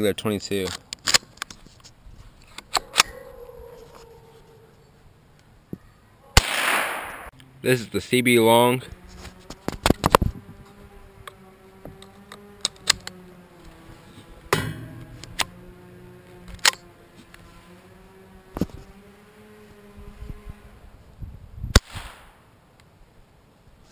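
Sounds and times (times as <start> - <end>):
rifle firing quiet sharp cracks: 6.4 - 7.3, 21.7 - 22.5.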